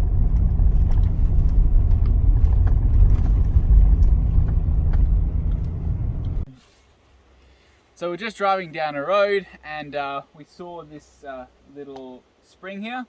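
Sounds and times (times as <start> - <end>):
car road and engine rumble: 0.0 - 6.5.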